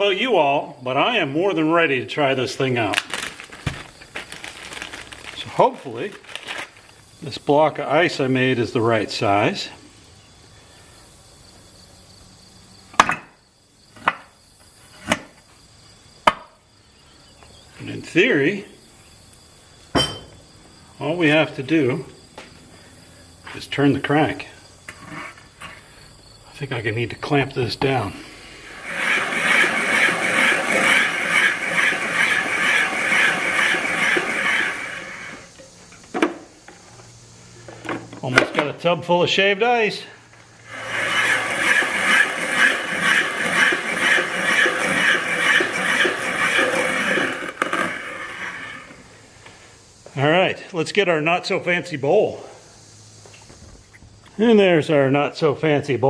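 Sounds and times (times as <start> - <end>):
ice machine scraping ice: 28.6 - 35.5, 40.7 - 49.0.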